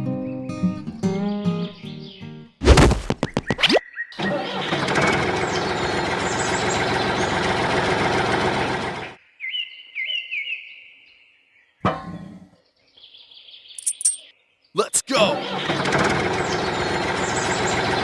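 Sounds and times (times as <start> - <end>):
quick high chirps: 13.8 - 15.4
loud dense noise: 14.8 - 15.4.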